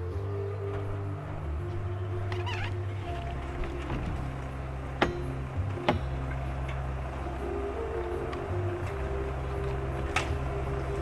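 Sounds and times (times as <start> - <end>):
engine running steadily: 0.0 - 11.0
sharp knocks: 5.0 - 6.1.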